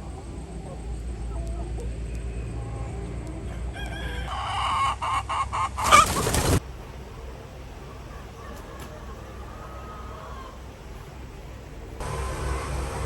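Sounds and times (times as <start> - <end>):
rooster crowing: 2.6 - 6.2, 7.9 - 11.1.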